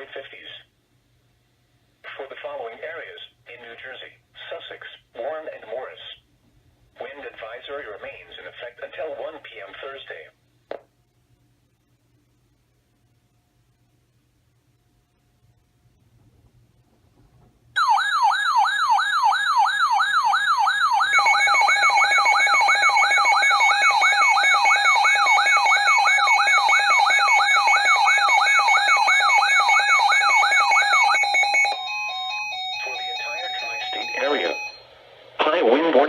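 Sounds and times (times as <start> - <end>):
electronic siren sweeping up and down: 17.8 - 34.8.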